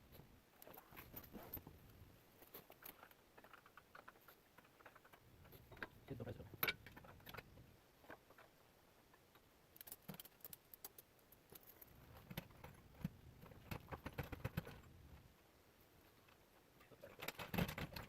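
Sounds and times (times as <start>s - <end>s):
tools clicking and knocking: 2.6s - 7.5s.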